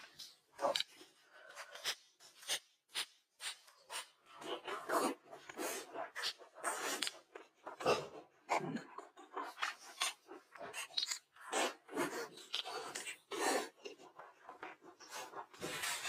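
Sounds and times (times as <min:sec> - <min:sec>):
food chewing and crunching: 0:00.6 - 0:16.0
soft mouth noises: 0:07.9 - 0:14.0.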